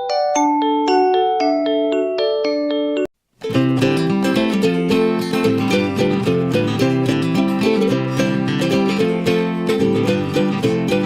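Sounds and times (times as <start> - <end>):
bell-like keyboard notes: 0.0 - 3.1
music with strummed guitar: 3.4 - 11.0.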